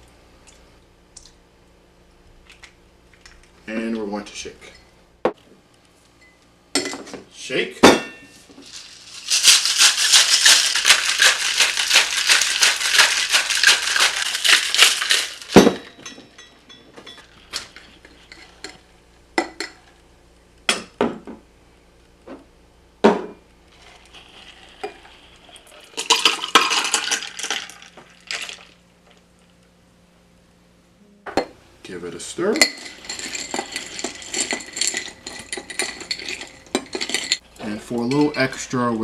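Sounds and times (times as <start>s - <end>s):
glass and metal clinks: 7.9s - 8.4s, 15.5s - 17.4s, 32.6s - 37.4s
ice rattling in cocktail shaker: 8.6s - 16.2s, 23.8s - 28.8s, 32.6s - 37.4s.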